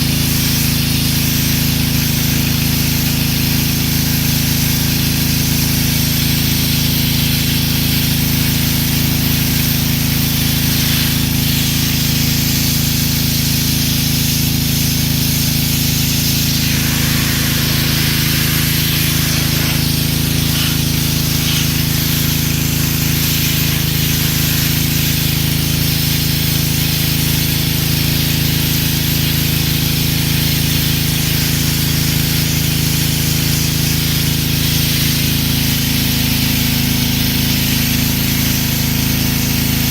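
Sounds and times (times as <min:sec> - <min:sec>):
pressure washer engine running: 0:00.0 - 0:39.9
water jet spraying on concrete: 0:00.0 - 0:39.9.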